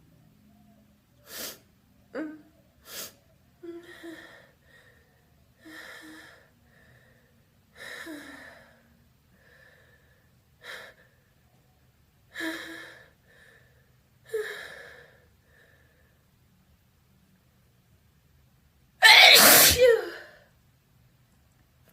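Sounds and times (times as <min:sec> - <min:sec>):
person gasping before a sneeze: 0:19.0 - 0:20.3.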